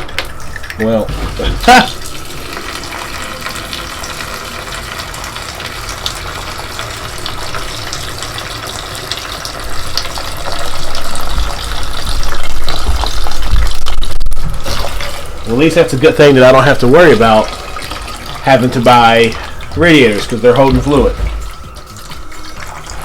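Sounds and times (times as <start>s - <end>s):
liquid gushing from drain: 0.0s - 23.0s.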